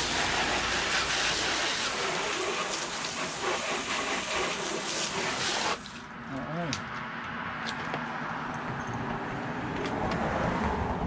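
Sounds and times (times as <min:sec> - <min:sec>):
water spraying on plastic: 0:00.0 - 0:06.1.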